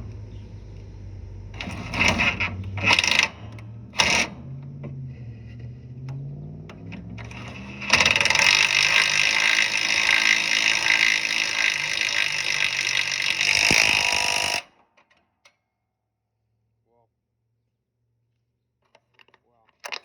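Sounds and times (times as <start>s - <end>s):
power tool driving a bolt: 1.6s - 15.2s.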